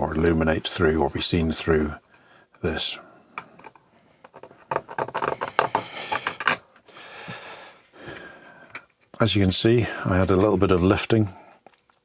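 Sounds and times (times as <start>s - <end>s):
plastic clicks and rubbing: 3.4s - 6.8s
soft plastic scraping: 3.4s - 6.8s.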